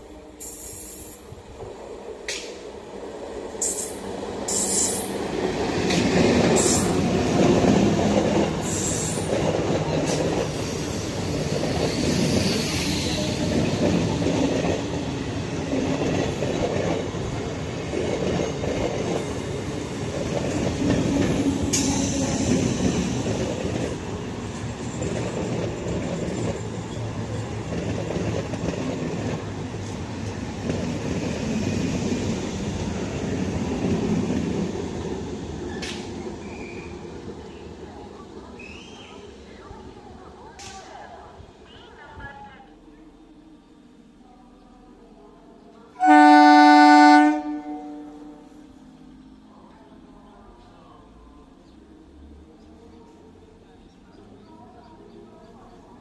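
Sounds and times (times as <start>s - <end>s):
train wheels rumbling on rails: 0.0s - 42.5s.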